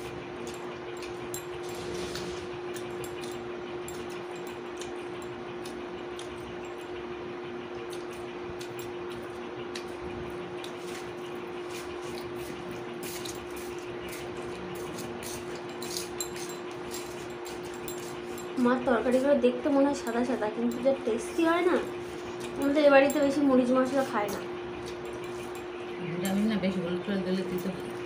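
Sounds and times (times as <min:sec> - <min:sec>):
steady hum: 0:00.0 - 0:28.0.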